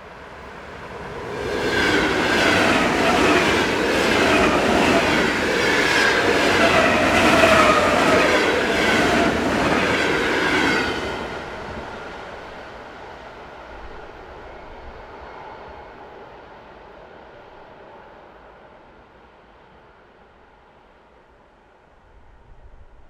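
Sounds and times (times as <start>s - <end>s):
train wheels rumbling on rails: 0.4s - 13.0s.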